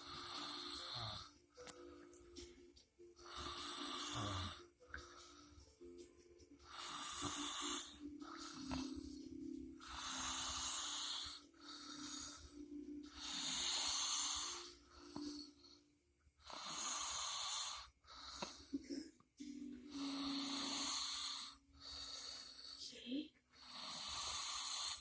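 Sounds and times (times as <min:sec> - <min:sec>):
person snoring wheezily: 0:00.0 - 0:01.3, 0:03.2 - 0:05.3, 0:06.6 - 0:09.2, 0:09.8 - 0:15.6, 0:16.4 - 0:18.8, 0:19.9 - 0:22.8, 0:23.6 - 0:25.0.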